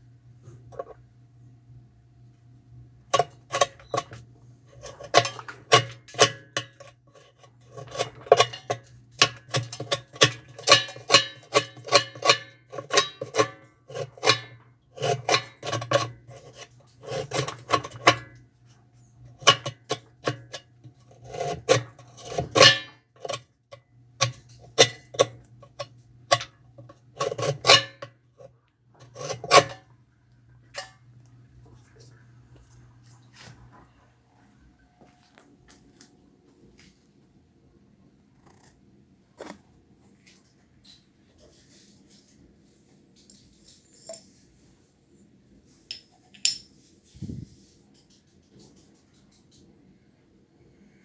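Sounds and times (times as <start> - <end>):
steady low hum: 0.0 - 51.0
tools and metal parts clinking: 43.3 - 44.5, 45.9 - 46.8.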